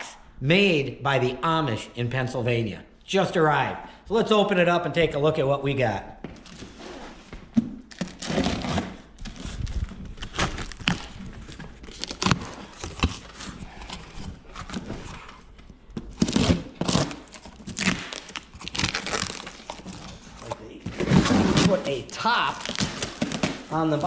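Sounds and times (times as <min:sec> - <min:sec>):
packing tape tearing: 0:07.9 - 0:15.5, 0:16.1 - 0:24.0
packing material crinkling: 0:07.9 - 0:24.0.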